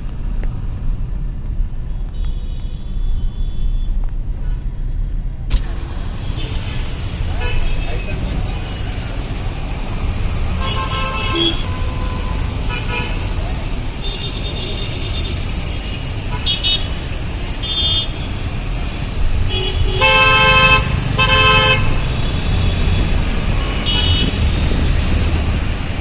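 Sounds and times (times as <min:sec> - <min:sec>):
traffic rumble: 0:00.0 - 0:26.0
vehicle horns honking: 0:06.0 - 0:08.3, 0:10.5 - 0:24.7.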